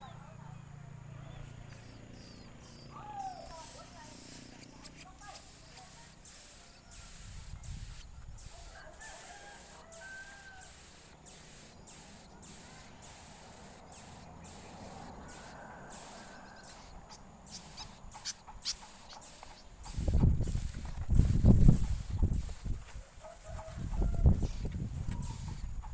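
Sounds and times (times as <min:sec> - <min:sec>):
rooster crowing faintly: 0:08.4 - 0:10.8, 0:14.8 - 0:17.1, 0:22.9 - 0:25.4
sharp clicks: 0:09.7 - 0:21.2.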